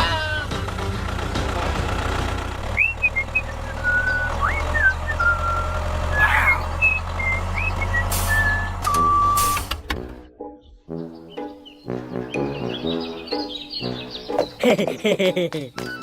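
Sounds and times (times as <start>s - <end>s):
diesel engine rumbling: 0.0s - 10.3s.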